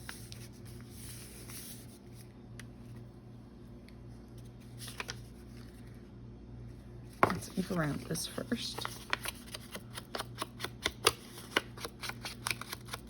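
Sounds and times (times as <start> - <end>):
paper rustling and sliding: 0.0 - 2.3, 4.4 - 6.0
low steady hum: 0.0 - 13.0.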